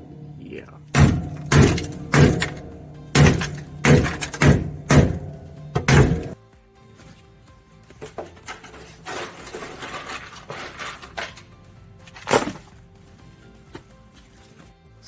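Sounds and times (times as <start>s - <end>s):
hard objects knocking and scraping: 0.0s - 6.4s, 7.9s - 12.8s
background music: 0.0s - 15.0s.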